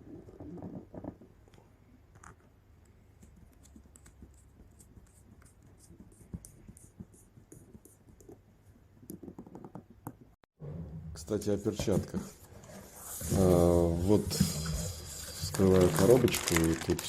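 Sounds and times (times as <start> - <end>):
soft handling knocks and scratching: 11.4 - 16.2.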